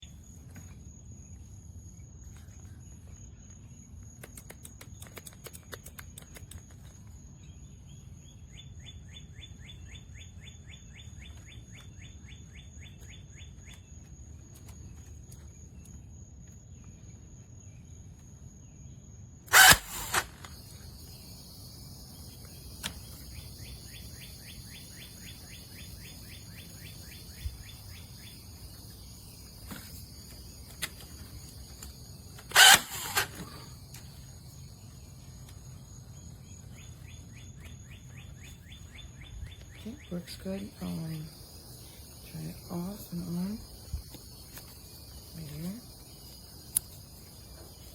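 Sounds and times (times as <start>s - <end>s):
outdoor background noise: 0.0s - 47.9s
bird trilling: 19.5s - 20.2s, 32.4s - 33.7s.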